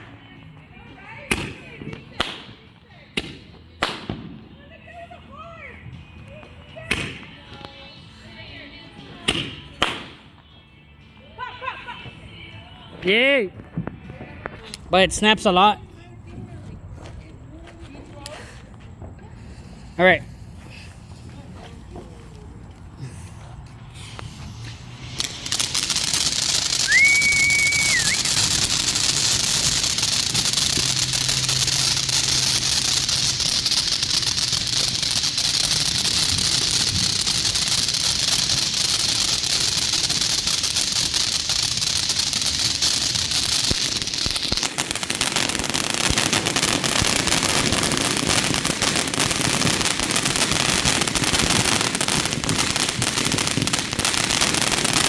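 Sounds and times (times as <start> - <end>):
firework fountain hissing and crackling: 18.0 - 55.0
firework whistle: 24.0 - 49.6.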